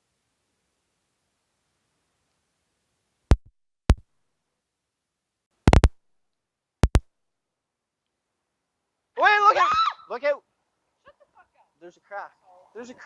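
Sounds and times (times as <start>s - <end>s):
short sharp knocks: 5.7s - 6.0s, 6.8s - 7.0s.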